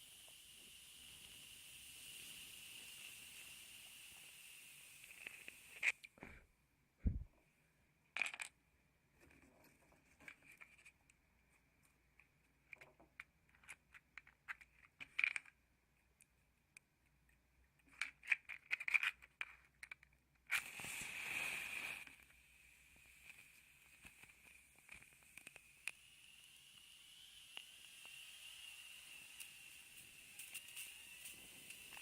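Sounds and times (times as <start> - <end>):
match striking and flaring: 1.0 - 6.1, 20.5 - 26.0, 29.0 - 32.0
matchbox rattling: 8.2 - 8.6, 13.1 - 15.6, 17.9 - 20.6.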